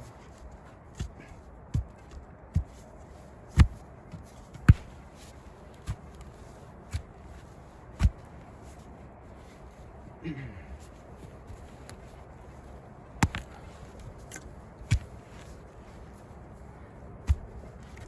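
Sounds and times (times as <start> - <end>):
shovel thudding into earth: 3.5 - 5.0, 8.0 - 8.2, 13.2 - 13.6, 14.8 - 15.2, 17.3 - 18.0.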